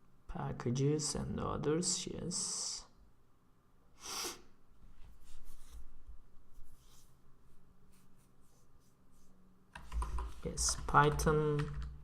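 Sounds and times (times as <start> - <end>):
keyboard and mouse clicks: 9.7 - 12.0.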